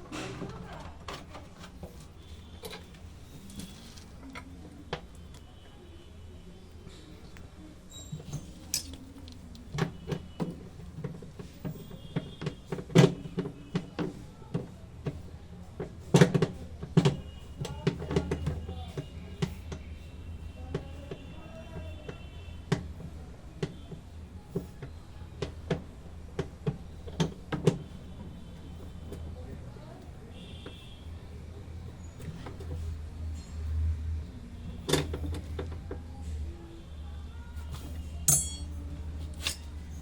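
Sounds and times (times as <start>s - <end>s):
tools and metal parts clattering: 8.0s - 9.4s, 38.3s - 40.0s.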